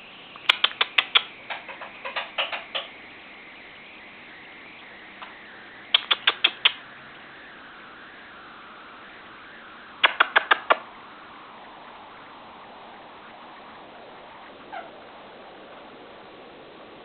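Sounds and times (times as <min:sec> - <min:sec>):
parakeet clicking: 0:00.4 - 0:03.0, 0:05.9 - 0:06.8.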